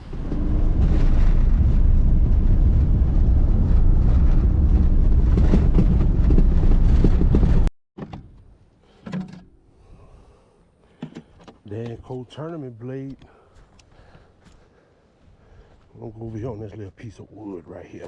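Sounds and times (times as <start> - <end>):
wind buffeting microphone: 0.0 - 7.7.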